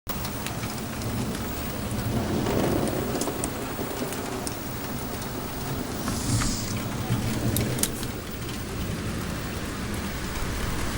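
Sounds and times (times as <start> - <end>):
steady rain falling: 0.1 - 6.1, 6.7 - 10.9
thunder rumble: 2.0 - 7.7.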